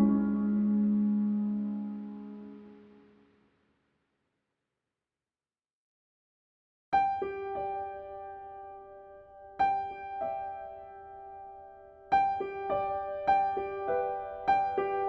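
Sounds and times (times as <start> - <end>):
slow solo piano music: 0.0 - 2.7, 7.0 - 15.0.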